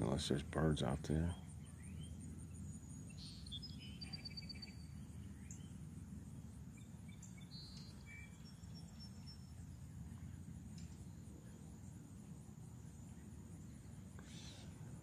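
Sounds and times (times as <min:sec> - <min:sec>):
songbirds chirping: 0:00.0 - 0:15.0
steady low rumble: 0:00.0 - 0:15.0
bird trills: 0:01.3 - 0:05.9, 0:06.7 - 0:11.6, 0:13.0 - 0:15.0.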